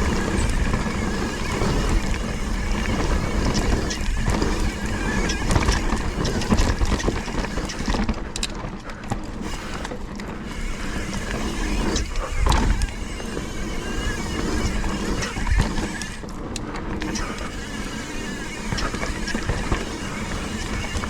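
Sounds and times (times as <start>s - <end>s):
wind buffeting microphone: 0.0s - 8.5s
bike knocks and rattles: 0.0s - 21.0s
bike tyre rumble on dirt: 0.0s - 21.0s.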